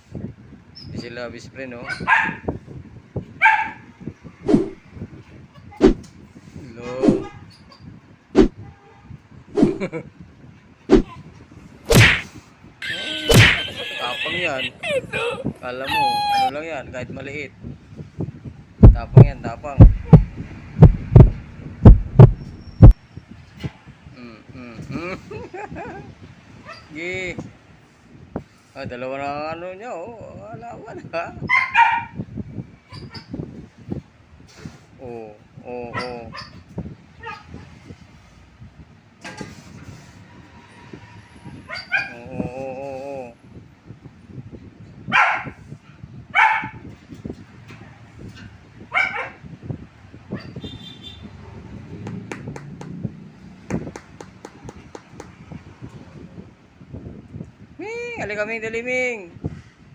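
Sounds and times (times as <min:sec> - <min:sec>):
dog barking: 0:01.8 - 0:02.5, 0:03.4 - 0:03.9, 0:31.5 - 0:32.2, 0:41.7 - 0:42.2, 0:45.1 - 0:45.6, 0:46.4 - 0:46.8, 0:48.9 - 0:49.4
pet whining: 0:12.8 - 0:16.5
heartbeat thumps: 0:18.8 - 0:23.0.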